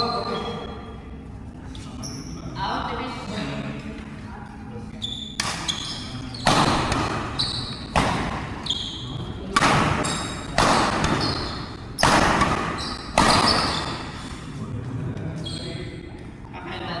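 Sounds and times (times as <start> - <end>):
sneakers squeaking on court floor: 0.0 - 0.7, 2.0 - 2.4, 4.9 - 9.3, 10.0 - 14.3, 15.4 - 15.8
rackets striking shuttlecock: 9.5 - 14.2.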